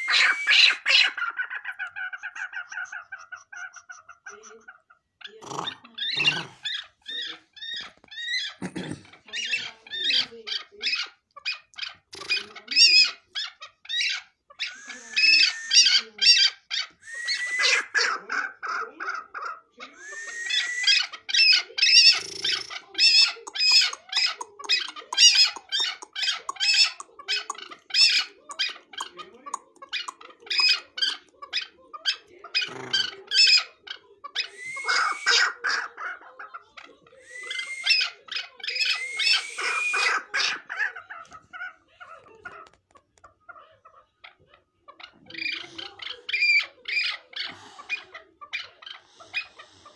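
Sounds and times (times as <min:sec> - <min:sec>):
partridge calling: 0:00.0 - 0:04.2, 0:20.0 - 0:31.7.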